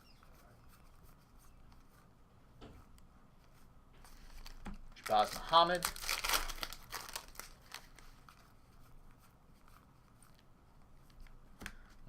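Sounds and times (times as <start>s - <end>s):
trading cards and foil wrappers rustling: 4.0s - 8.6s.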